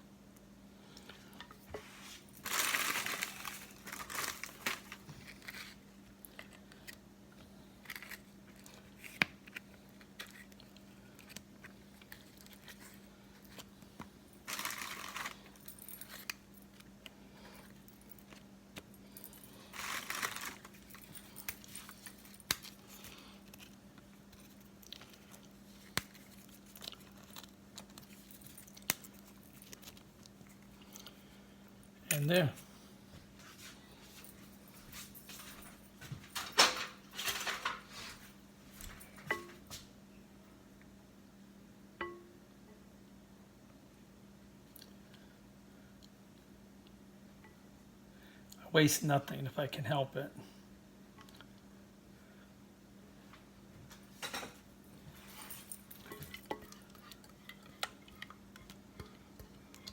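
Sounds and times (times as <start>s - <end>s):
faint steady hum: 0.0s - 59.9s
wrapper crinkling: 2.1s - 5.8s, 14.4s - 16.4s, 19.5s - 23.7s
crackers breaking and tapping: 14.5s - 16.4s, 19.7s - 23.7s.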